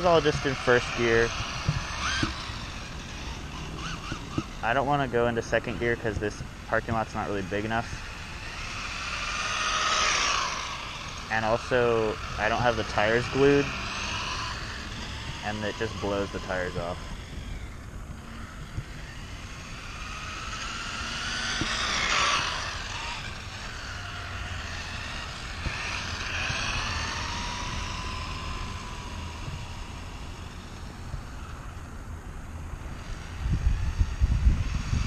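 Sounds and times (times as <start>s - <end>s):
rc car transmission whining: 0.0s - 35.0s.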